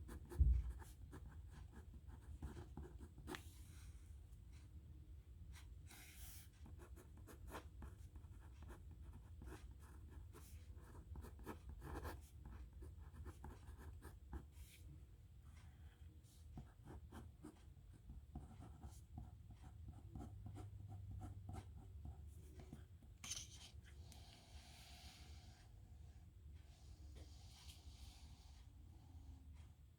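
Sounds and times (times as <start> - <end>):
low room hum: 0.0 - 29.9
pen scratching on paper: 0.1 - 3.4, 5.9 - 14.4, 16.6 - 23.4.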